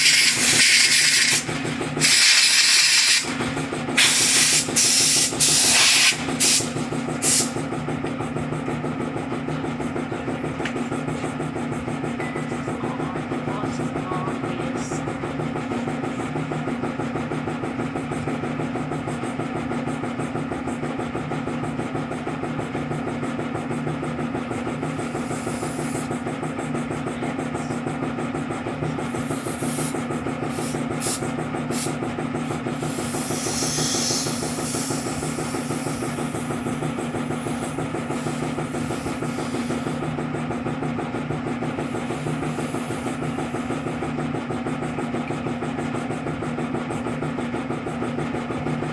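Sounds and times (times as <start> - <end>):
sharp hisses: 4.0 - 7.5, 32.5 - 39.8
engine humming: 28.8 - 40.4.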